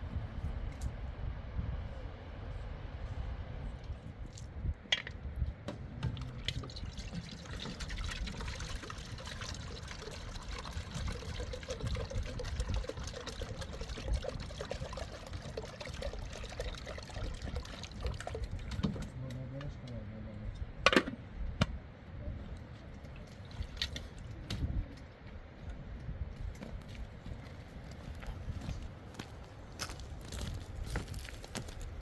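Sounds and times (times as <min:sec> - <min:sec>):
water trickling: 0:06.1 - 0:18.9.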